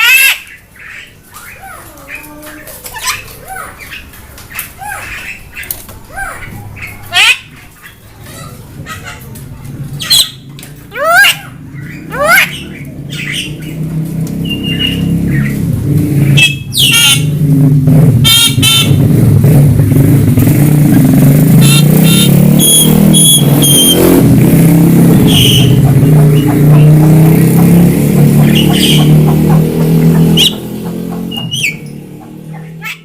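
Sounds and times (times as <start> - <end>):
loud engine running: 12.8 - 32.9
bird whistles and calls: 14.4 - 15.6, 21.6 - 24.1, 25.2 - 25.8, 28.5 - 29.2, 30.2 - 30.6.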